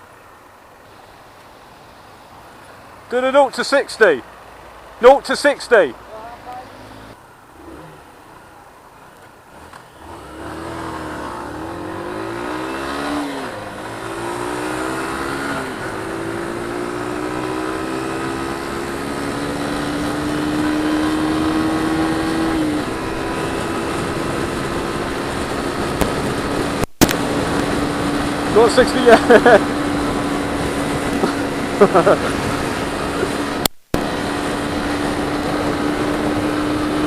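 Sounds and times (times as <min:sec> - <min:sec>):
motorcycle engine accelerating: 0:09.5 - 0:37.0.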